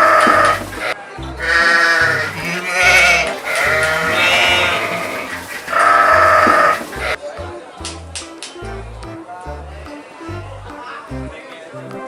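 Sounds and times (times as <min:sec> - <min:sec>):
sheep bleating: 0:00.0 - 0:07.2.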